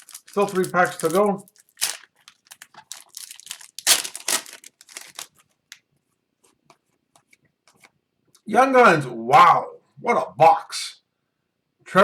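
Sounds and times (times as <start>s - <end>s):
foil pack tearing and crinkling: 0.0s - 5.5s.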